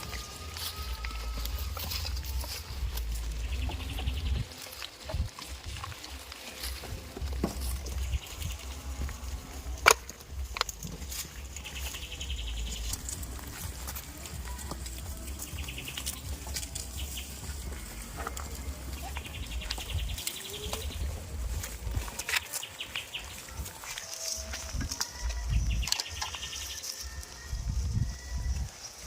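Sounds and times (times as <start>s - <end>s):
steady low rumble: 0.0s - 22.3s
goats bleating: 0.0s - 25.5s
rapid high chirping: 11.1s - 28.6s.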